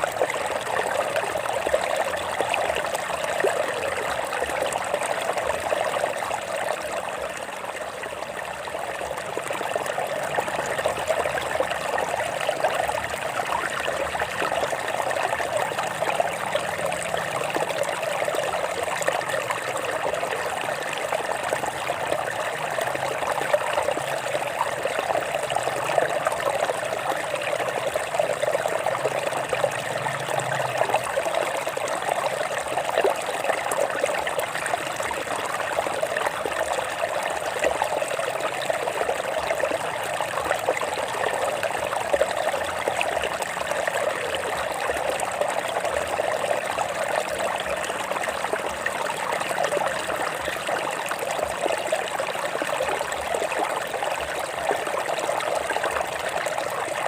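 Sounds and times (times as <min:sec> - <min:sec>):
stream flowing over rocks: 0:00.0 - 0:57.0.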